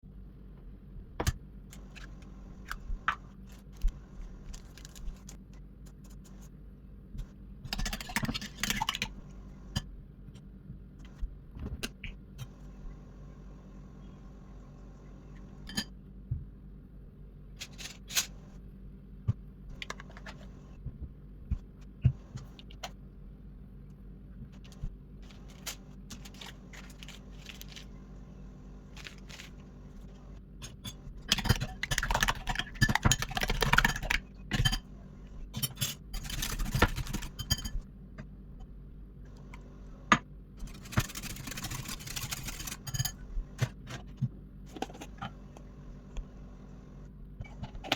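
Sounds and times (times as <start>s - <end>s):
utensils and dishes clinking: 35.6s - 37.8s.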